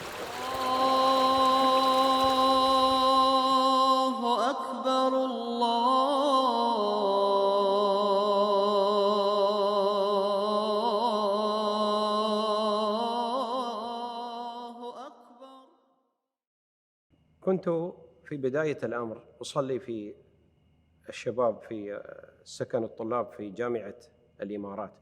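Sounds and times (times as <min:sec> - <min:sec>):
man chanting: 0:00.2 - 0:12.4.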